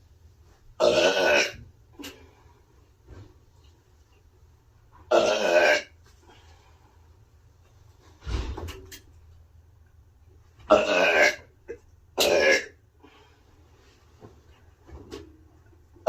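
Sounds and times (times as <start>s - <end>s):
woman burping: 0.8s - 1.6s, 5.1s - 5.9s, 10.7s - 12.8s.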